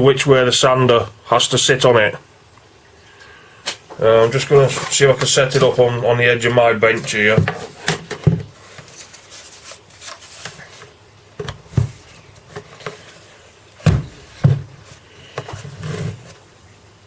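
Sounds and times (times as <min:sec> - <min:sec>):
sander rubbing and knocking on workbench: 0:06.9 - 0:08.6.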